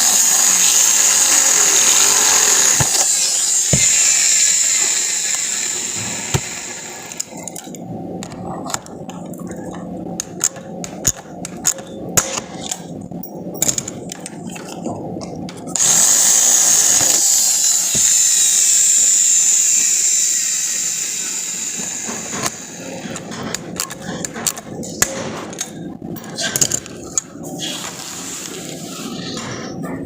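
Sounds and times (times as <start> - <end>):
power tool whining: 0.0 - 7.4, 15.8 - 23.0
sharp clicks and knocks: 5.9 - 15.7.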